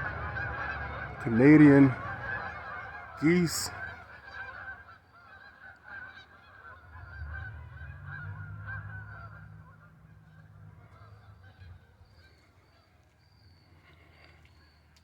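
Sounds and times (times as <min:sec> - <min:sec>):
low hum: 0:00.0 - 0:04.2
geese honking: 0:00.0 - 0:12.0.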